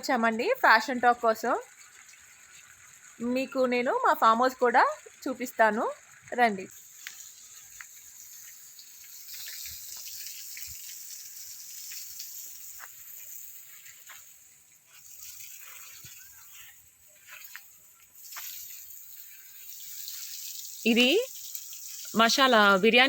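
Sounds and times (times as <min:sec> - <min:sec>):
steady high hiss: 0:00.0 - 0:23.0
footsteps clicking and crunching: 0:12.7 - 0:18.6.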